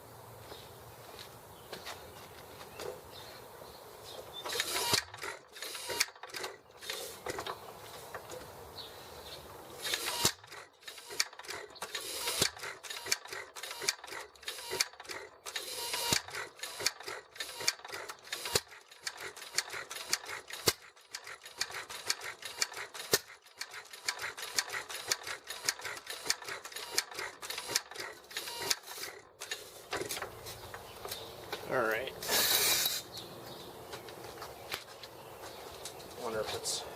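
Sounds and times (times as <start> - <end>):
engine clicking and clattering: 10.2 - 30.1.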